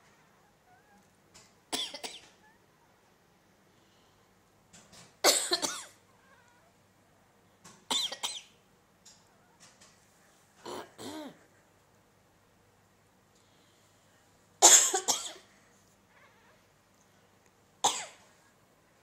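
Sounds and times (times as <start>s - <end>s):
person coughing: 5.2s - 5.9s, 10.6s - 11.4s, 14.6s - 15.5s.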